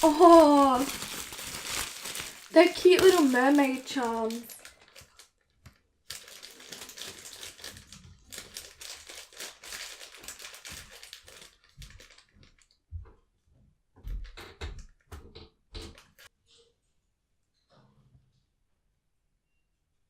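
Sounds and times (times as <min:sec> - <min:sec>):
packet crinkling and rustling: 0:00.0 - 0:12.8.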